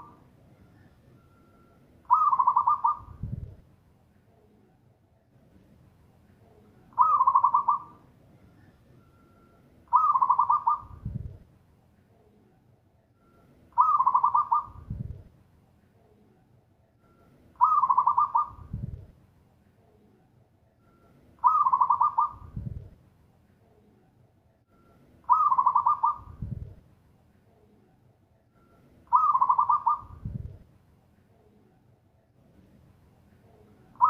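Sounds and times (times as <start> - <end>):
dove trilled cooing: 2.0 - 3.5, 6.9 - 8.0, 9.9 - 11.4, 13.7 - 15.2, 17.6 - 19.0, 21.4 - 22.9, 25.3 - 26.7, 29.1 - 30.6.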